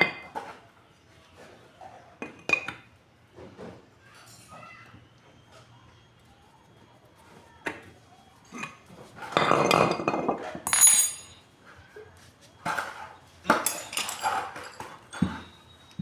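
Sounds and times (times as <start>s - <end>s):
metal parts knocking and clattering: 9.3s - 11.4s, 13.5s - 15.5s
ringing metal clink: 10.7s - 11.4s, 13.6s - 15.5s.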